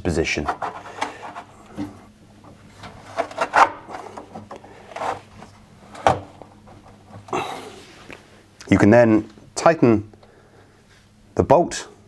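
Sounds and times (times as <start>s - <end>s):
heater element scraping plastic: 0.2s - 8.0s.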